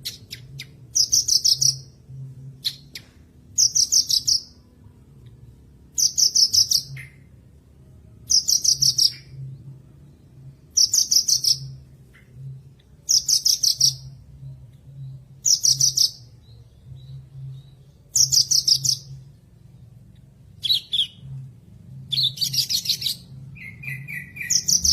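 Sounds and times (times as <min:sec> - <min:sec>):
bush lark singing: 0:05.9 - 0:07.2, 0:08.3 - 0:09.4, 0:10.7 - 0:12.3, 0:13.0 - 0:19.3, 0:22.1 - 0:24.9.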